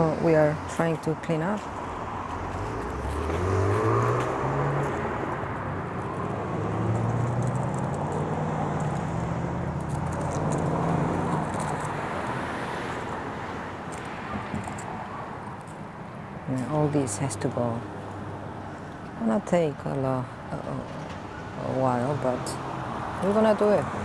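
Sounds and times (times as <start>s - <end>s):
vehicle engine accelerating: 1.8s - 13.0s.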